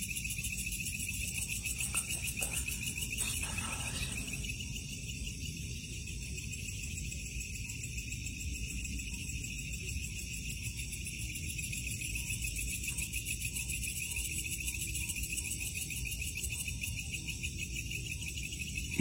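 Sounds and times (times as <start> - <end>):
night insects trilling: 0.0 - 19.0.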